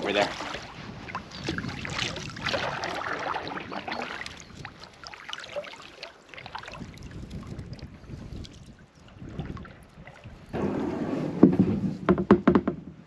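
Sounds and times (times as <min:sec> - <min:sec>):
kayak paddle splashing: 0:00.0 - 0:11.1.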